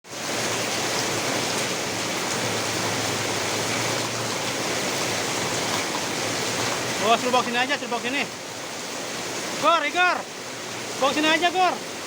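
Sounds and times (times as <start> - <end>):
heavy rain pouring: 0.0 - 12.0.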